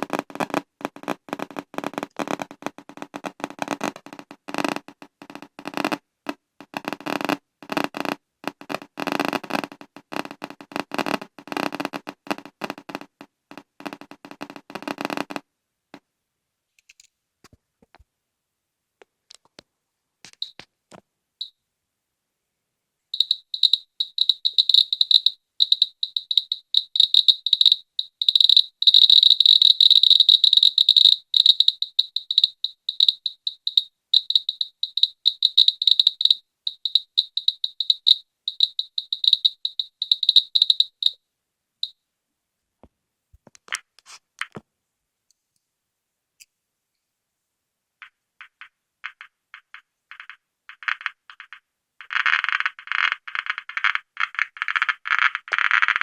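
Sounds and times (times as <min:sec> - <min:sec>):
geiger counter chirping: 0:23.1 - 0:41.2, 0:48.0 - 0:56.0.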